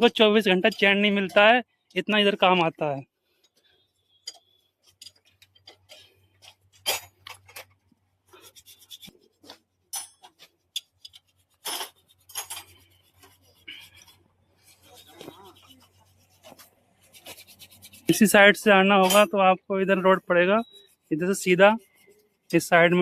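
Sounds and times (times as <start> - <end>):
light metallic clinks and taps: 3.4 - 7.8.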